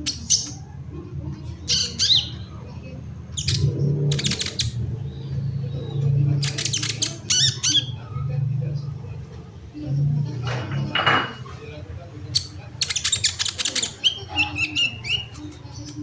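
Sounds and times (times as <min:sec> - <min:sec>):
bird chirps and squawks: 0:01.6 - 0:02.6, 0:03.3 - 0:08.1, 0:12.3 - 0:15.9.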